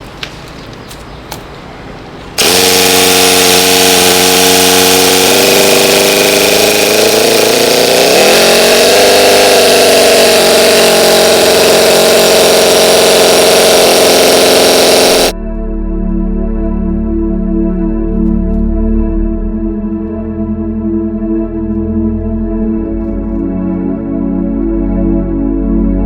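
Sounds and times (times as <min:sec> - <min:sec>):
model nitro engine revving: 0:02.4 - 0:15.4.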